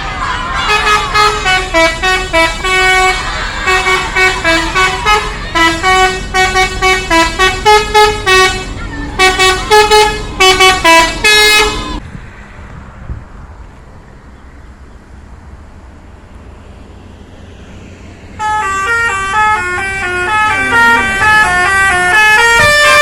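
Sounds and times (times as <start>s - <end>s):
steady background noise: 0.0s - 17.0s
musical air horn melody: 0.4s - 12.0s, 18.4s - 23.0s.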